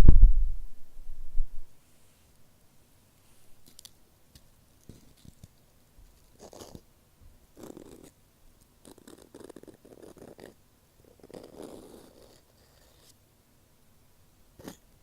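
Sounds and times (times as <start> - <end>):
ear pick scratching microphone: 0.0 - 1.7.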